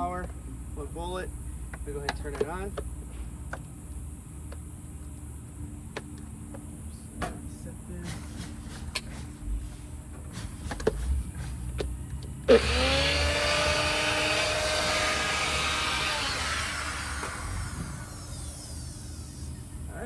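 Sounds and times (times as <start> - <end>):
blender motor whining: 12.5 - 19.8.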